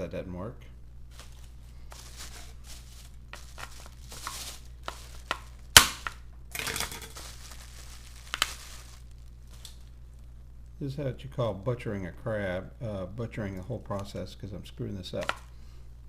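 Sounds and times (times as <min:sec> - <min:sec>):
crab shell cracking and tearing: 0:07.9 - 0:09.9.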